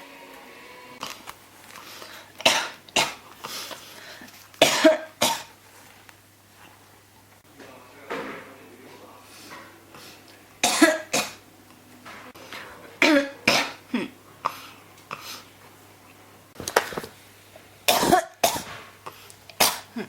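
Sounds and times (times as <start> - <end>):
person coughing: 2.4 - 3.2, 4.6 - 5.5, 10.6 - 11.4, 17.9 - 18.8, 19.6 - 20.0.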